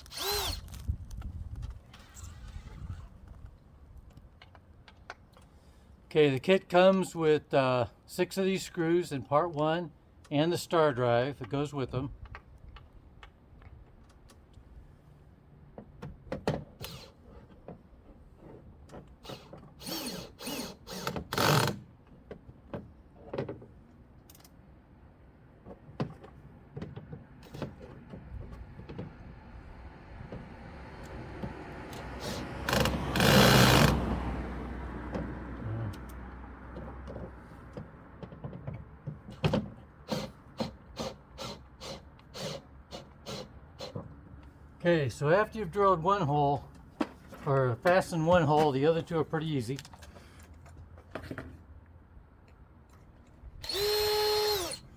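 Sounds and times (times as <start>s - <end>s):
cordless drill driving screw: 0.0s - 0.9s, 1.9s - 3.1s, 16.8s - 17.2s, 19.2s - 21.8s, 31.9s - 34.0s, 40.1s - 44.0s, 53.6s - 54.9s.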